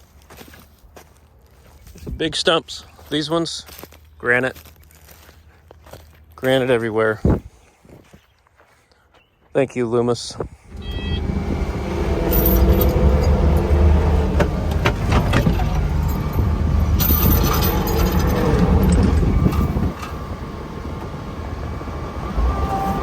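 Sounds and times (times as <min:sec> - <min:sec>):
excavator diesel engine running: 0:10.6 - 0:23.0
metallic clanks and scraping: 0:10.7 - 0:20.3.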